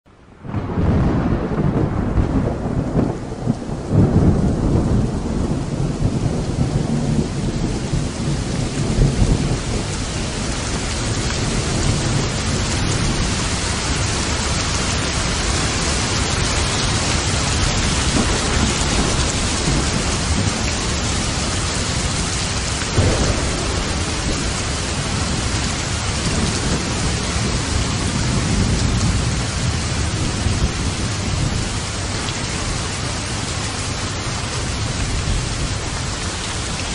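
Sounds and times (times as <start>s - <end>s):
heavy rain: 0.1s - 36.9s
thunder rumbling: 0.3s - 36.9s.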